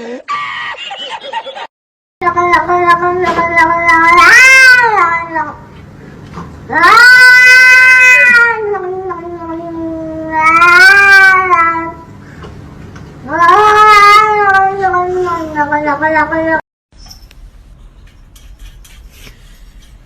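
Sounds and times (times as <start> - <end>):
cat yowling: 2.2 - 5.6, 6.7 - 12.1, 13.2 - 16.6.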